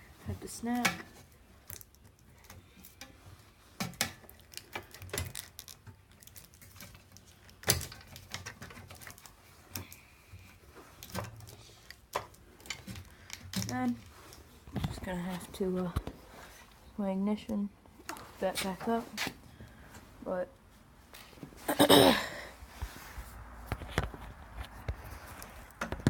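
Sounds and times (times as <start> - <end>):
hands handling small parts clicking: 0.8 - 3.2, 3.8 - 10.0, 11.0 - 14.5.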